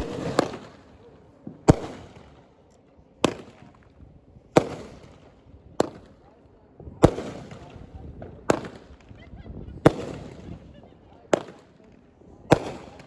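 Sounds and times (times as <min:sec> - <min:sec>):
small firework pop: 0:00.0 - 0:00.7
fireworks bangs: 0:00.0 - 0:00.9.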